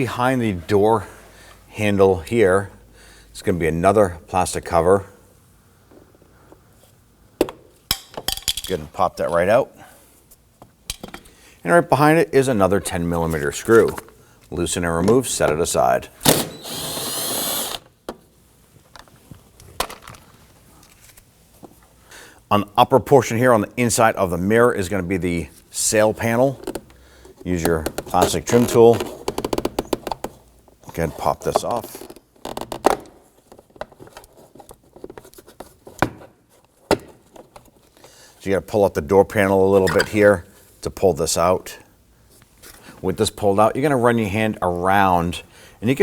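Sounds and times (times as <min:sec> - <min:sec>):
power driver whirring: 0:16.3 - 0:17.9.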